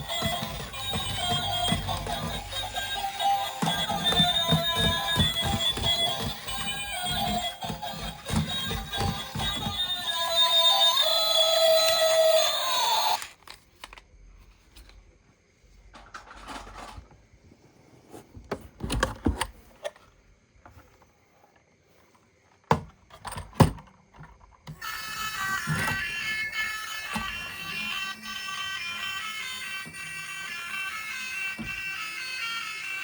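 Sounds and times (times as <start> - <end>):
toy vehicles being handled: 0.0 - 15.1, 15.9 - 17.2.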